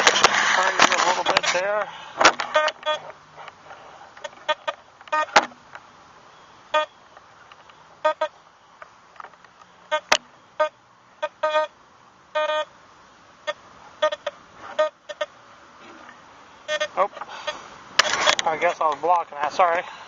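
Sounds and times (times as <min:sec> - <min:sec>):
metal detector beeps: 0:02.5 - 0:03.1, 0:06.7 - 0:07.0, 0:08.0 - 0:08.3, 0:12.4 - 0:12.7, 0:16.7 - 0:17.6.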